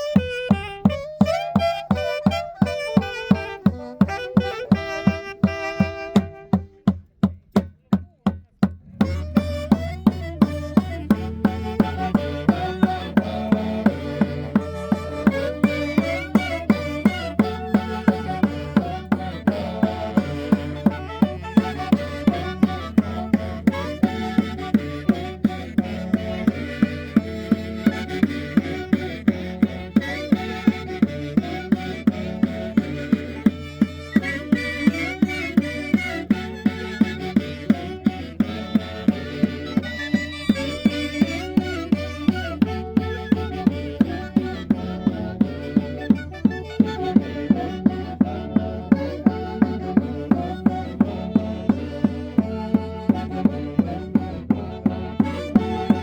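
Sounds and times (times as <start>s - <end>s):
band playing melody: 0.0s - 6.9s, 8.8s - 56.0s
steady drumbeat: 3.1s - 29.8s
low bass: 8.8s - 12.1s.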